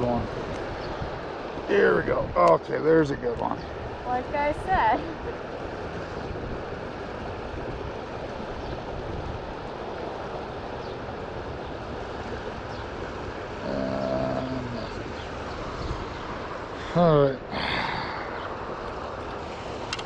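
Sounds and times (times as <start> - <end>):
river rushing: 0.0 - 20.0.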